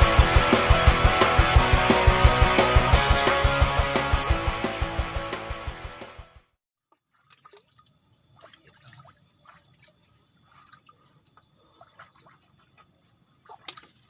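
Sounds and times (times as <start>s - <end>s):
small drips: 6.9s - 14.0s.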